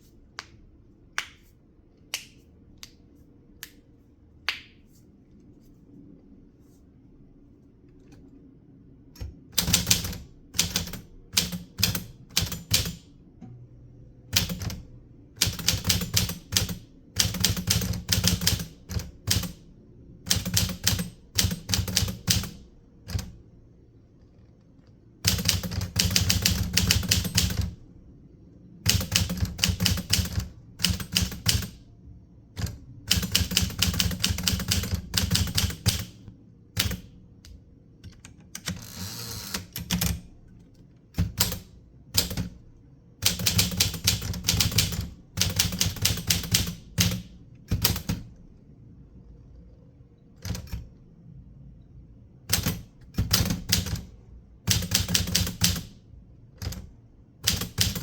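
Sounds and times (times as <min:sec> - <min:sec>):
typewriter keys striking paper: 0:57.5 - 0:58.0.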